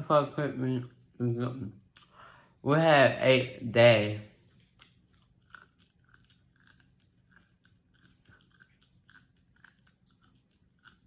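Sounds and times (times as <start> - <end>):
faint low hum: 0.0 - 11.0
crunchy chewing of popcorn: 4.4 - 11.0.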